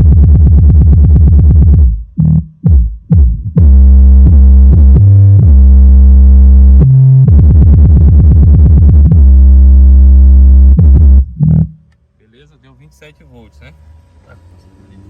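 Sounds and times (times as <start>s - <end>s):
bass-heavy electronic music: 0.0s - 12.0s.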